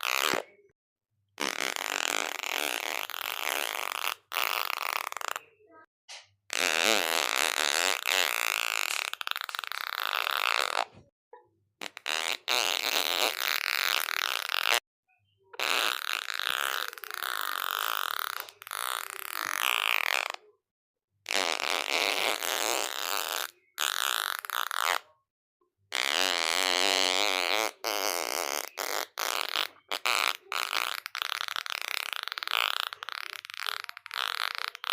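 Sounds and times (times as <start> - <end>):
long fart sounds: 0.0 - 0.6, 1.4 - 5.5, 6.5 - 11.0, 11.8 - 14.8, 15.6 - 20.4, 21.3 - 25.1, 25.9 - 34.9.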